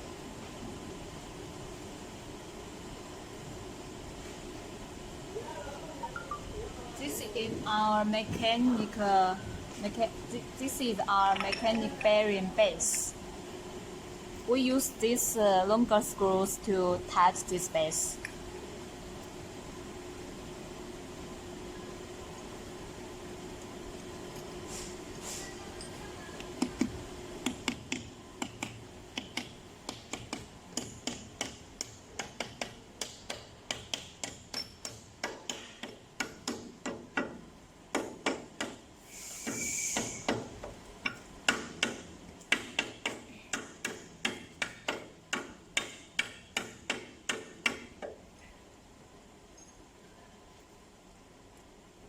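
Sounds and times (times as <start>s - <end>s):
short hiss: 39.0s - 40.3s.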